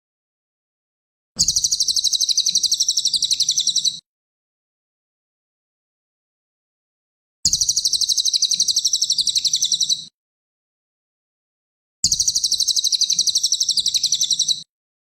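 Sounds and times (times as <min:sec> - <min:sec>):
bird singing high trills: 0:01.4 - 0:04.0, 0:07.5 - 0:10.1, 0:12.1 - 0:14.7.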